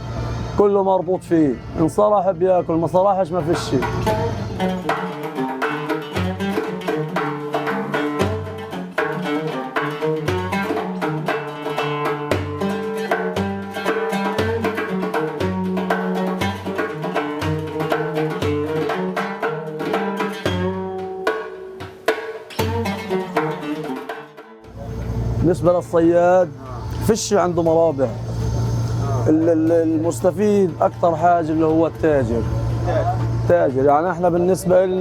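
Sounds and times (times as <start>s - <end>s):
plucked string instrument: 0.0s - 35.0s
low beat: 24.6s - 35.0s.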